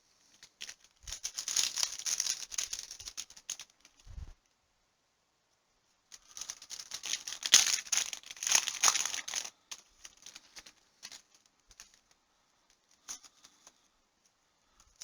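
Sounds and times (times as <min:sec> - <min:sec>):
cellophane wrapper crinkling and tearing: 0:06.8 - 0:09.5.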